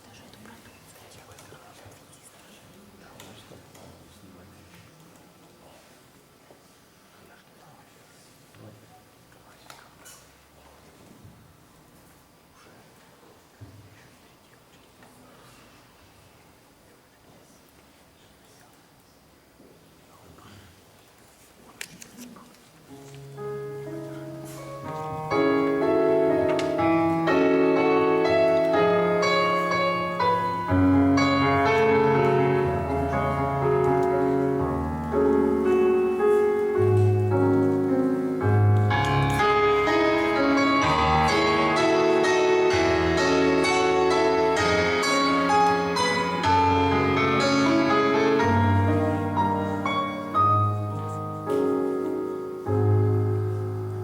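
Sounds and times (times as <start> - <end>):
piano chords over bass notes: 23.2 - 54.0.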